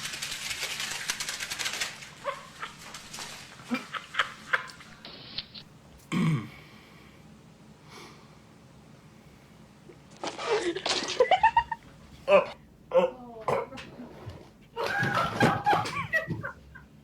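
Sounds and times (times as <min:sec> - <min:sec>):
cat scuffling and clattering: 0:13.8 - 0:16.6.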